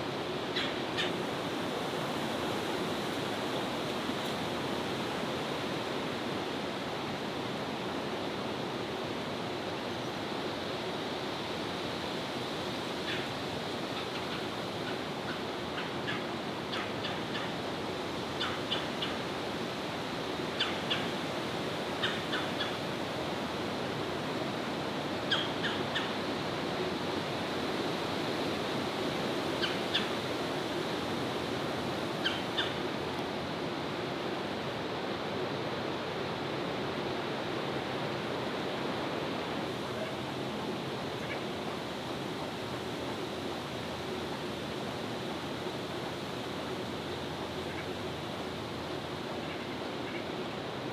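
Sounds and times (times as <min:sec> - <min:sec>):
outdoor background rush: 0:00.0 - 0:50.9.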